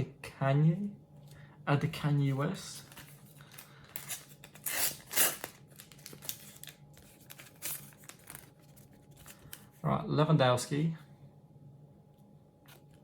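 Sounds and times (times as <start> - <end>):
paper packet tearing: 2.7 - 9.6
wrapper crinkling: 2.7 - 9.7.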